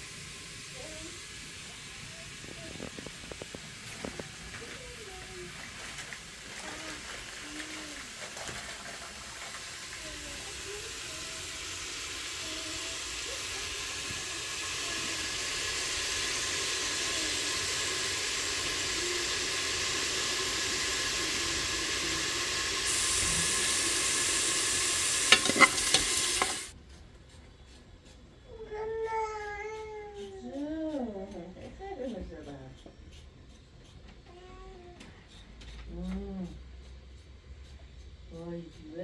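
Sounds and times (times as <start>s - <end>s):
rain hissing: 0.0s - 26.8s.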